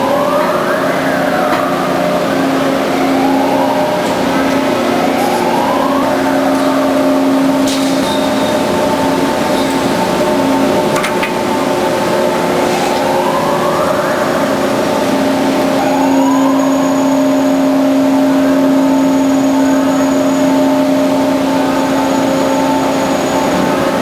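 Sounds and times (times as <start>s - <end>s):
band saw running: 14.7s - 24.0s.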